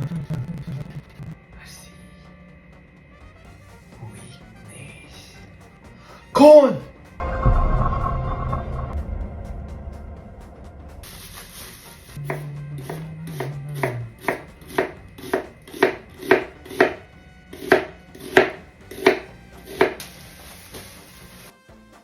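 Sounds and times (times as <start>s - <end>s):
knife chopping on cutting board: 12.3s - 20.1s.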